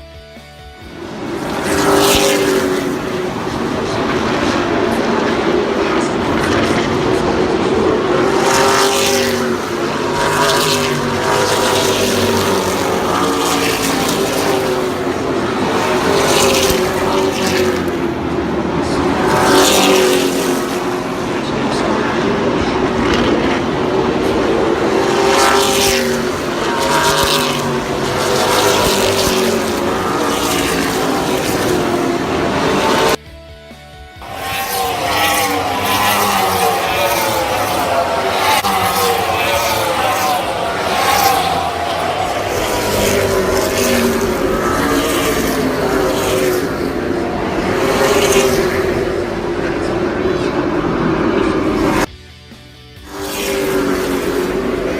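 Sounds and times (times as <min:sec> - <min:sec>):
race car engines passing: 0:00.0 - 0:54.9.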